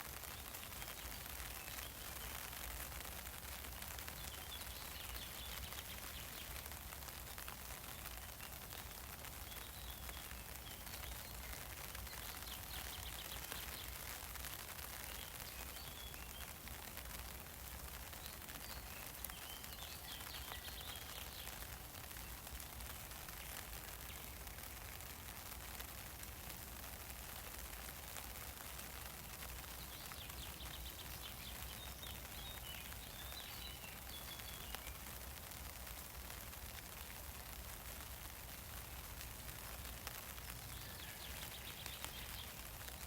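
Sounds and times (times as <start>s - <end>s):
rain on an umbrella: 0.0s - 43.0s
birds chirping: 29.8s - 35.0s, 40.4s - 43.0s.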